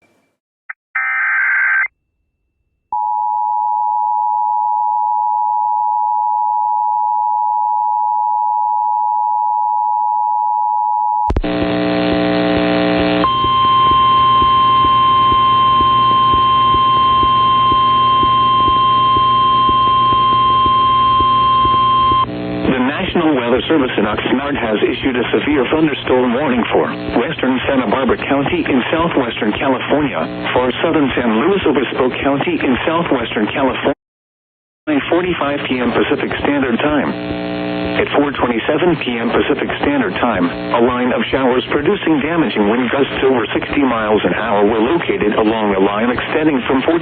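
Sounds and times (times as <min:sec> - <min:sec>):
data burst tones: 0:11.3 - 0:24.5
harsh high alert tone over buzz: 0:11.3 - 0:32.7, 0:34.9 - 0:47.0
voice message: 0:11.3 - 0:34.0, 0:34.9 - 0:47.0
two-tone attention signal: 0:13.2 - 0:22.3.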